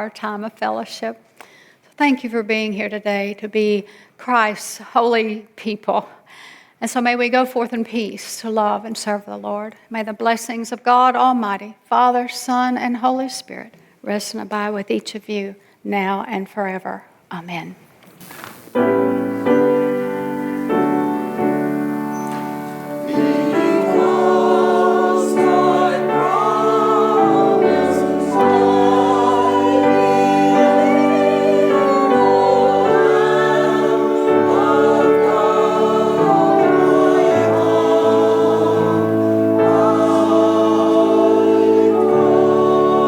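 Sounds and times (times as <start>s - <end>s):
held keyboard chords: 18.8s - 43.0s
choir singing: 19.5s - 43.0s.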